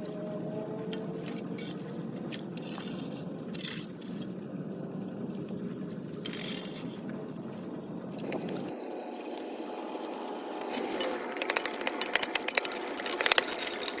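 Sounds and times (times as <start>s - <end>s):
sharp clicks and knocks: 10.6s - 14.0s.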